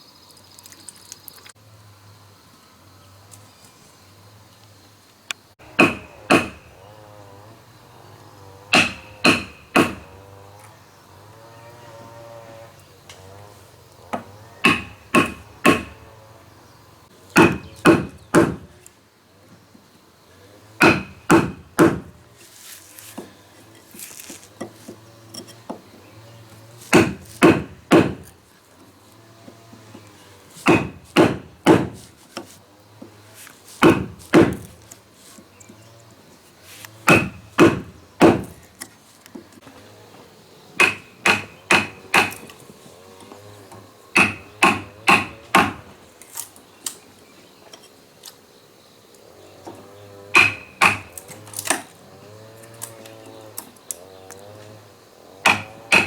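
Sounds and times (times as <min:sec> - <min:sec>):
axe chopping wood: 0:05.7 - 0:06.7, 0:08.7 - 0:10.2, 0:14.1 - 0:16.0, 0:17.4 - 0:18.7, 0:20.8 - 0:22.2, 0:26.9 - 0:28.3, 0:30.6 - 0:32.5, 0:33.8 - 0:34.8, 0:37.0 - 0:38.6, 0:40.8 - 0:42.6, 0:44.2 - 0:45.9, 0:50.4 - 0:51.9, 0:55.4 - 0:56.0.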